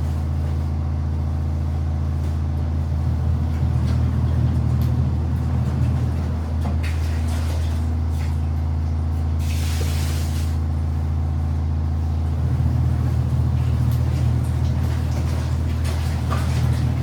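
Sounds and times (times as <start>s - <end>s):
washing machine motor humming: 0.0s - 17.0s.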